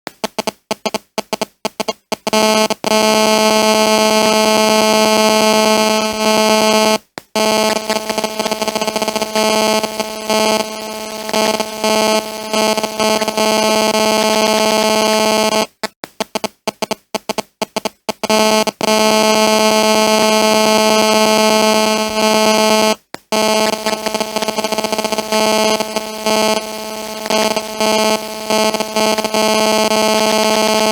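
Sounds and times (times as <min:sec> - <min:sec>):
mobile phone interference buzz: 0:00.1 - 0:30.9.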